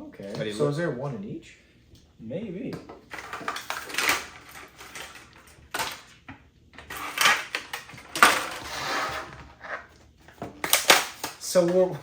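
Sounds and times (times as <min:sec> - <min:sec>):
plastic packaging crinkling and clattering: 0:03.1 - 0:06.2, 0:06.8 - 0:12.0.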